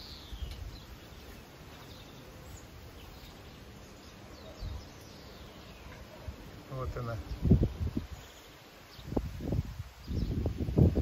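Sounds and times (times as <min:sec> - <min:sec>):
faint bird chirps: 0:00.0 - 0:09.2
wind buffeting microphone: 0:06.3 - 0:11.0.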